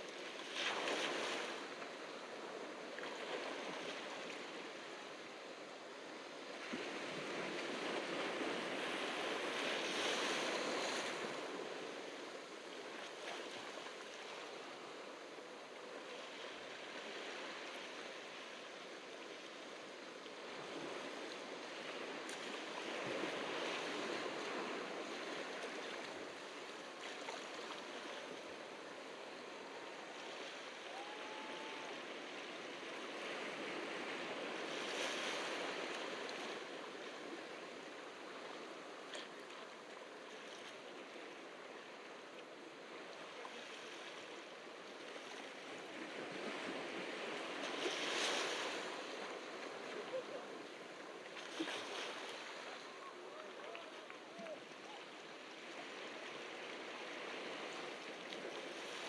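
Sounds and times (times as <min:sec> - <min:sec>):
ocean surf washing onto beach: 0:00.0 - 0:39.9.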